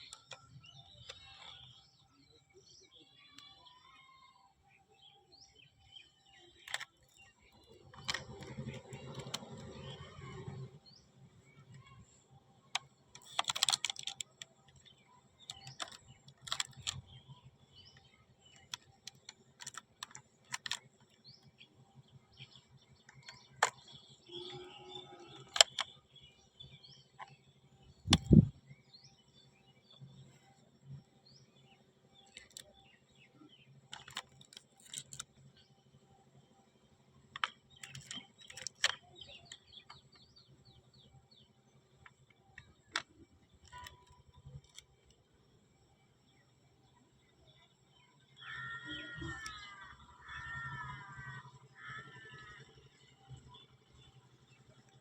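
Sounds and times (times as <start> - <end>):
plastic pieces clicking: 0.0 - 1.7, 6.5 - 10.7, 12.7 - 17.1, 17.9 - 21.2, 23.0 - 24.0, 25.3 - 26.0, 32.2 - 32.7, 33.9 - 35.4, 37.3 - 40.0, 42.0 - 45.2
birds chirping faintly: 0.0 - 55.0.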